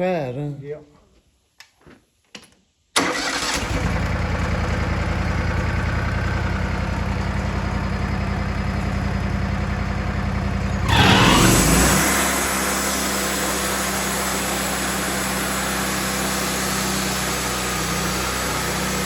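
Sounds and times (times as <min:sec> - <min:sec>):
sawmill engine running: 0:03.1 - 0:19.0.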